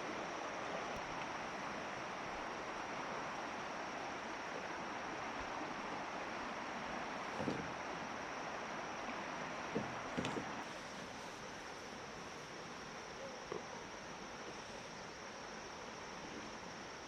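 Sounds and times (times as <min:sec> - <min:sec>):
flowing river water: 0:00.0 - 0:17.0
light knocks: 0:09.7 - 0:10.5.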